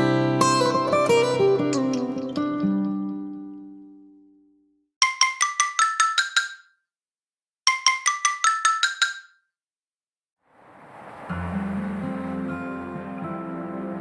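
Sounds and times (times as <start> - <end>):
acoustic guitar ringtone: 0.0 - 3.9, 5.0 - 6.6, 7.7 - 9.3
marimba-like ringtone: 5.0 - 6.7, 7.7 - 9.4.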